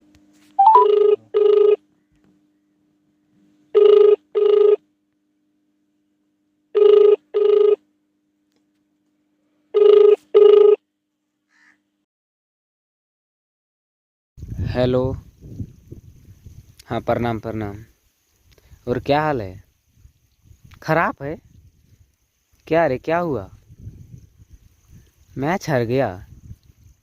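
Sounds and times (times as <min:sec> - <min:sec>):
telephone double ring: 0:00.6 - 0:01.8.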